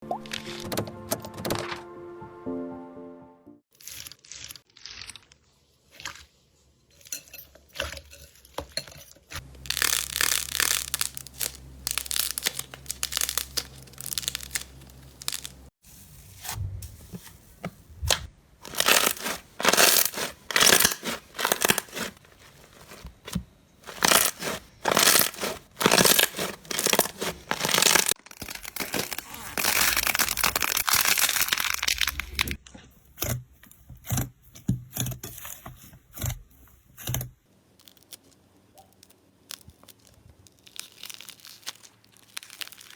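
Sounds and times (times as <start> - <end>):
slime squishing and popping: 9.4 - 15.7, 18.0 - 32.5, 37.8 - 42.9.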